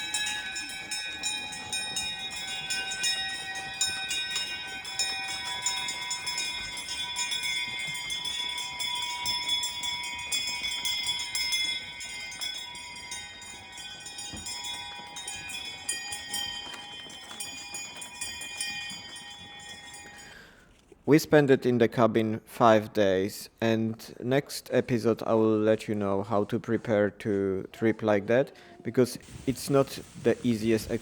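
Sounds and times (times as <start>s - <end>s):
sleigh bells jingling: 0.0s - 20.8s, 29.2s - 31.0s.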